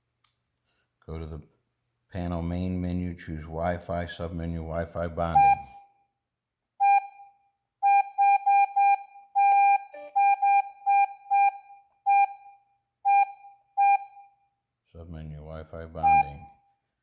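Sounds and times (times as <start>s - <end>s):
keypad beeps: 7.8s - 14.3s.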